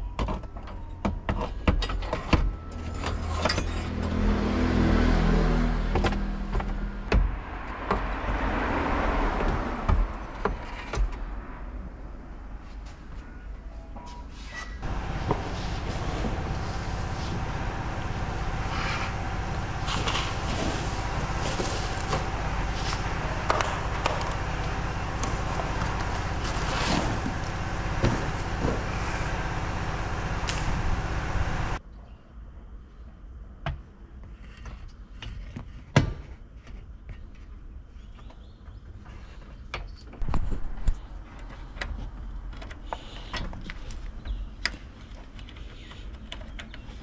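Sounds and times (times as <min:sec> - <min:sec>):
van engine running: 0:02.6 - 0:10.9, 0:14.8 - 0:31.8.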